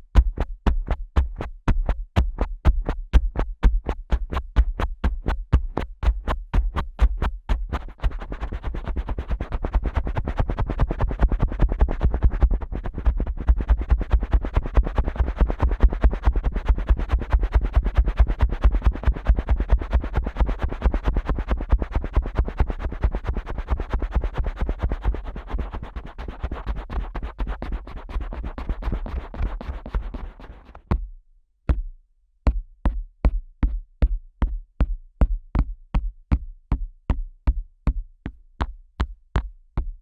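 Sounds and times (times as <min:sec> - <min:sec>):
fingers tapping on microphone: 0:00.1 - 0:19.4.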